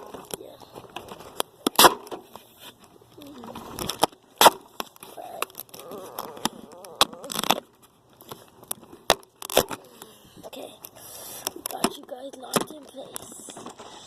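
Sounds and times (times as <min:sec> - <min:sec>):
duct tape ripping off roll: 0:03.5 - 0:07.7, 0:09.1 - 0:09.9.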